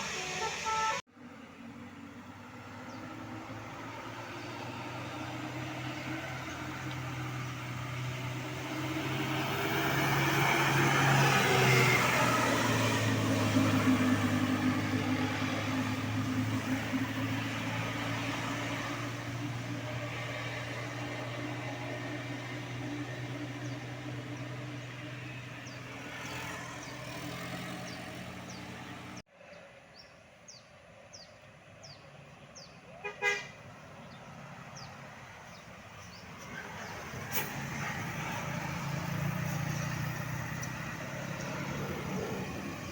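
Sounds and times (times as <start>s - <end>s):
short horn toot: 0.0s - 1.0s
large vehicle engine droning: 0.0s - 30.0s, 33.6s - 42.9s.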